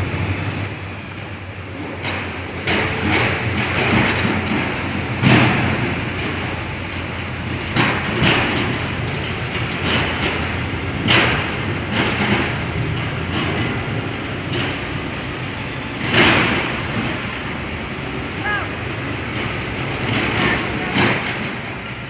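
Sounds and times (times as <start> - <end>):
heavy machinery running: 0.0 - 22.0
metallic clanks and knocks: 1.8 - 15.4, 16.0 - 17.2, 19.3 - 22.0.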